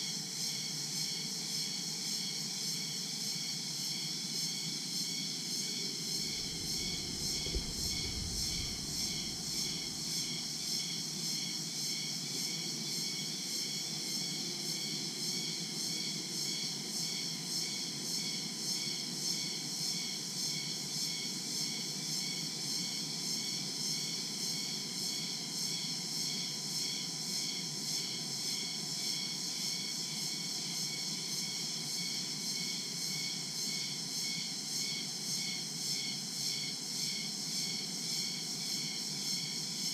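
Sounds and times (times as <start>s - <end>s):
insects trilling: 6.1s - 10.5s
brief low bump: 6.2s - 10.4s
steady low rumble: 6.2s - 10.4s.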